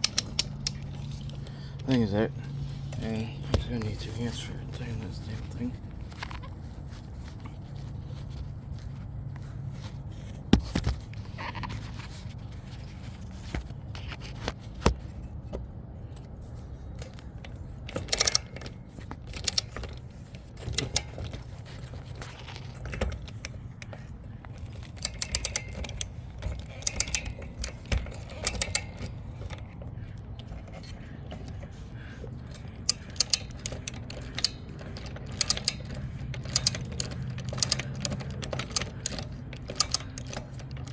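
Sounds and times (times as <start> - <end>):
steady low hum: 0.0 - 40.9
torque wrench click: 32.8 - 40.9.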